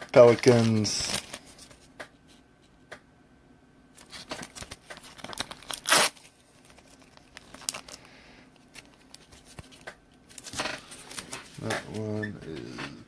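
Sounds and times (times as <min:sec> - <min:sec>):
plastic sleeves crinkling: 0:00.1 - 0:01.9, 0:04.0 - 0:12.2.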